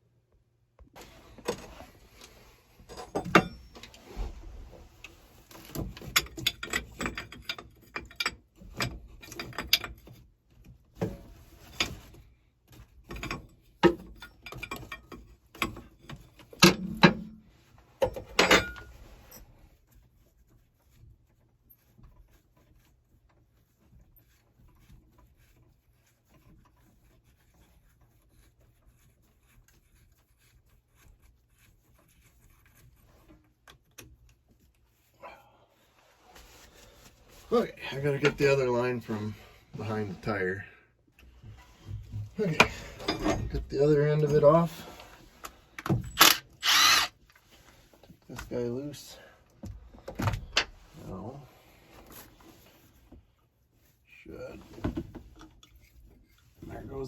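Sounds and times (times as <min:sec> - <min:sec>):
hand tools clicking and clanking: 0:42.0 - 0:44.9.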